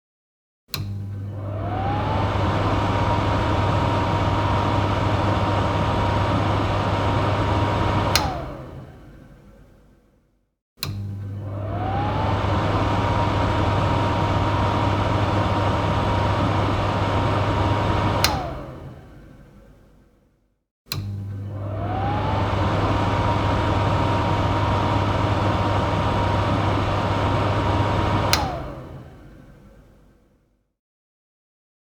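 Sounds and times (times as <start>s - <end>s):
fan switch click: 0.7s - 1.0s, 7.9s - 8.6s, 10.8s - 11.1s, 17.8s - 18.9s, 20.9s - 21.2s, 27.3s - 29.0s
extractor fan motor whine: 1.0s - 9.2s, 11.1s - 19.5s, 21.2s - 29.9s.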